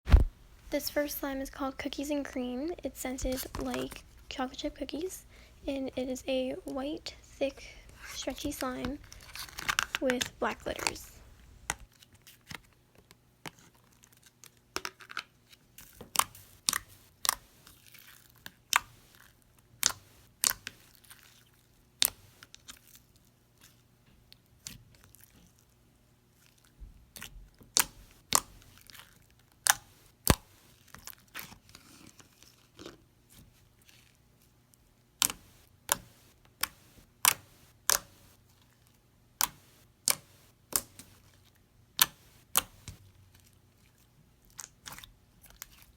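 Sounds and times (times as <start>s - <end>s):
slime clicking and popping: 27.2s - 29.0s, 29.6s - 30.5s, 35.2s - 38.3s, 39.4s - 41.2s, 42.0s - 43.0s.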